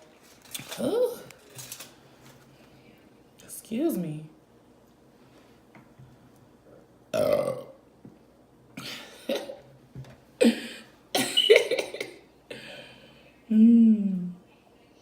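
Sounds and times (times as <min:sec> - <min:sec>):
woman burping: 0:07.1 - 0:07.8.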